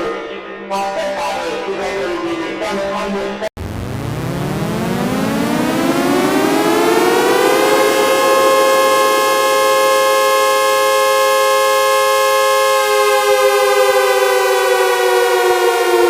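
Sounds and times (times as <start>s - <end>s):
civil defense siren: 3.6s - 16.0s.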